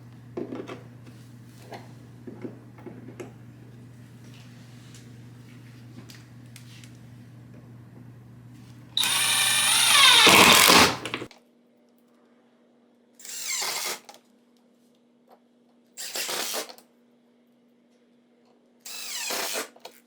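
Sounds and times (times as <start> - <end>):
power drill driving screws: 9.0 - 11.3.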